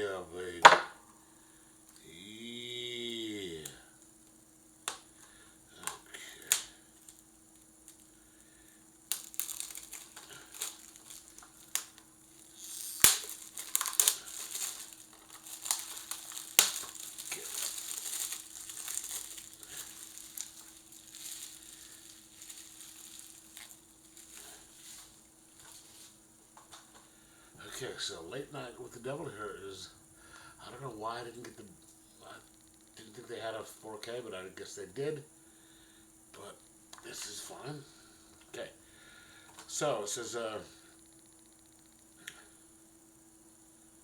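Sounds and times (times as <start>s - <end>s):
plastic wrap crinkling: 6.4s - 8.2s, 9.0s - 26.2s.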